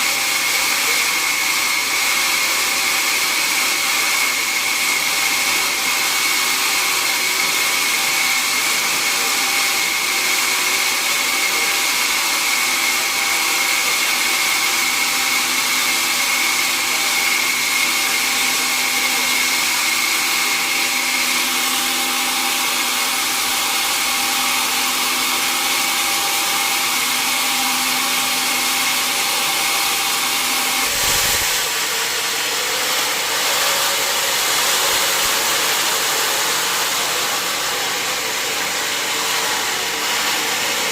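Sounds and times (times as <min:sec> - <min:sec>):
sawmill saw whining: 0:00.0 - 0:40.9.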